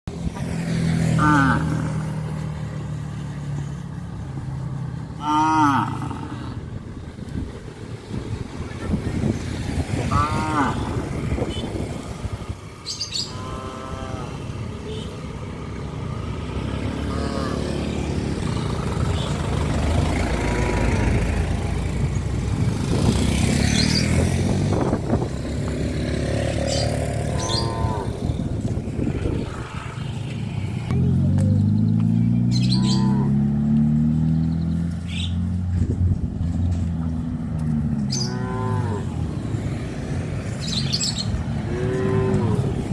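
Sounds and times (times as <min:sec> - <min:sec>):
low rumble of passing vehicles: 0:00.1 - 0:42.9
cattle mooing: 0:01.2 - 0:02.2, 0:05.2 - 0:06.6, 0:10.1 - 0:11.1, 0:13.2 - 0:14.4, 0:17.0 - 0:17.7, 0:27.3 - 0:28.3, 0:32.8 - 0:33.4, 0:38.1 - 0:39.2, 0:41.6 - 0:42.9.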